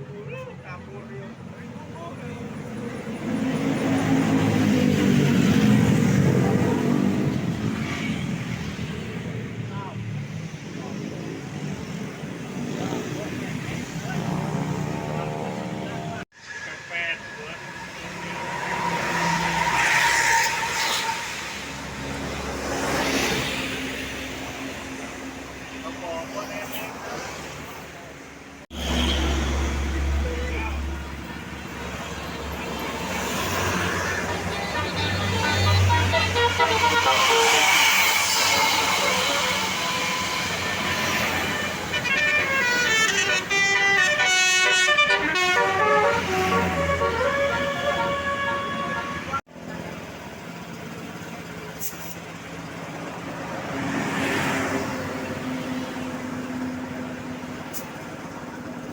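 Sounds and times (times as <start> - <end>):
bus engine rumble: 0.0 - 16.3, 16.9 - 58.9
road vehicle noise: 0.0 - 58.9
multi-tone bus horn tune: 33.9 - 49.4.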